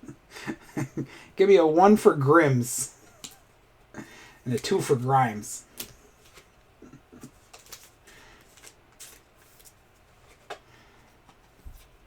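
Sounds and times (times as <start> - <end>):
trading cards rustling and clicking: 5.6 - 6.6, 7.2 - 11.9.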